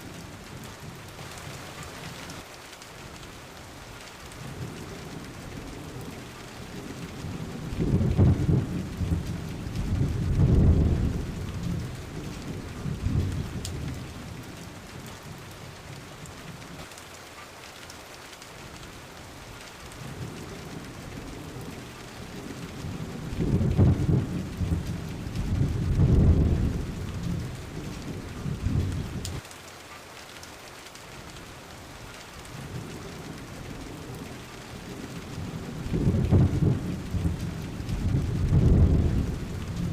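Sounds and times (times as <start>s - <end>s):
steady rain falling: 0.0s - 39.9s
thunder rumbling: 4.4s - 16.7s, 20.0s - 29.4s, 32.5s - 39.9s.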